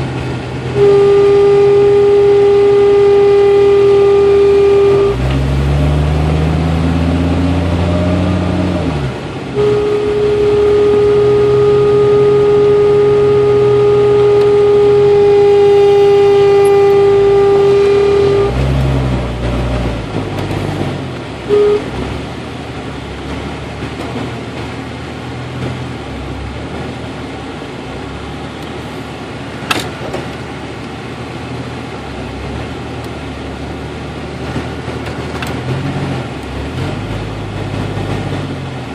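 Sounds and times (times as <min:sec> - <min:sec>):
compressor whine: 0:00.0 - 0:20.8, 0:21.4 - 0:22.1
car engine running: 0:00.0 - 0:38.9
engine revving: 0:00.0 - 0:38.9.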